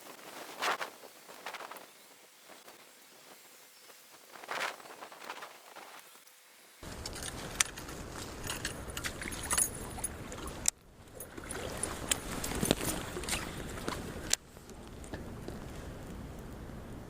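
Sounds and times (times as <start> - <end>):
water sloshing and splashing: 8.4 - 14.1.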